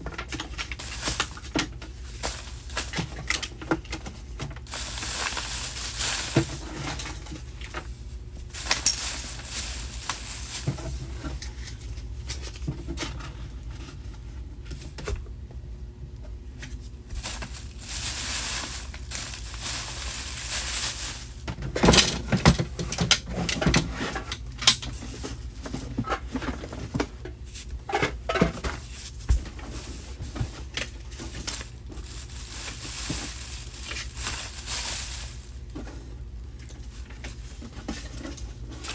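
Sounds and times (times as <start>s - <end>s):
objects clicking and knocking: 21.6s - 25.0s.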